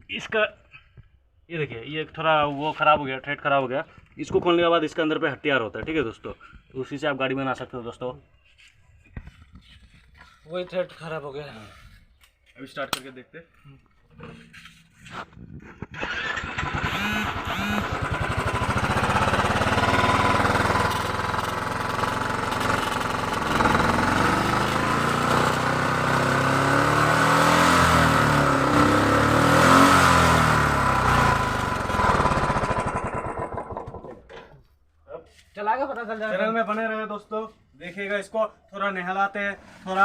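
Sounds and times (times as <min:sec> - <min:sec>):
motorcycle engine revving: 0:15.6 - 0:34.3.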